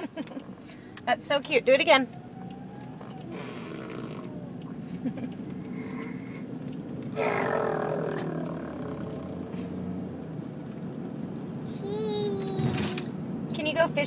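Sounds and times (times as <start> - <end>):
child making raspy grunting noise: 3.3 - 4.3, 7.2 - 9.5.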